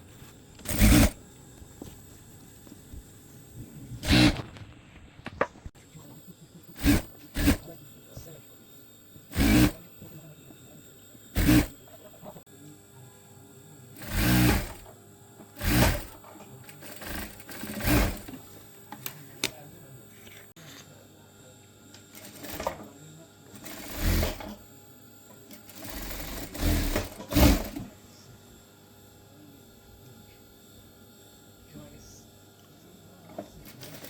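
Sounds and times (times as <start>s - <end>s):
sewing machine stitching: 0.6s - 1.2s, 4.0s - 4.6s, 6.8s - 7.7s, 9.3s - 9.8s, 11.3s - 11.8s, 14.0s - 14.9s, 15.6s - 18.4s, 22.1s - 22.9s, 23.6s - 24.6s, 25.5s - 27.9s, 33.6s - 34.0s.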